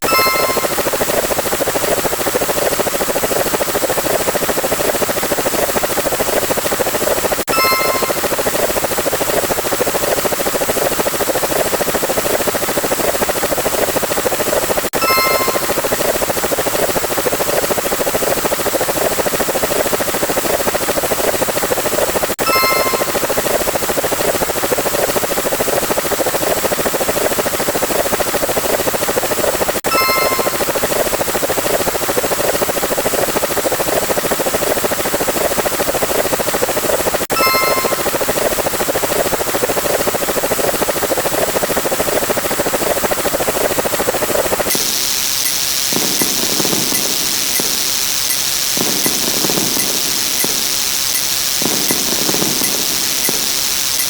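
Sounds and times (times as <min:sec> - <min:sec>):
short pitched chime: 0:00.0 - 0:01.0, 0:07.5 - 0:08.4, 0:15.0 - 0:15.9, 0:22.5 - 0:23.3, 0:29.9 - 0:30.7, 0:37.3 - 0:38.2
rapidly pulsing mechanical drone: 0:00.0 - 0:54.0
rapid fluttering whir: 0:00.1 - 0:54.0.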